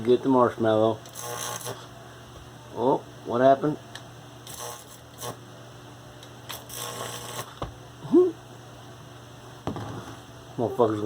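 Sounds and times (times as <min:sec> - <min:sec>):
steady low hum: 0:00.0 - 0:11.0
electric crackling and sizzling: 0:04.4 - 0:05.4, 0:06.5 - 0:07.6.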